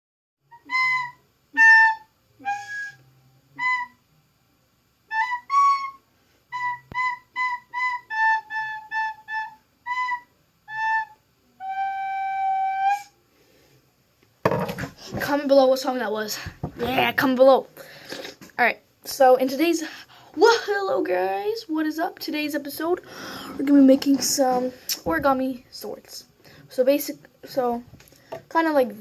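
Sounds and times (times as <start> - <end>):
flute tune: 0.4 - 4.2, 5.1 - 13.2.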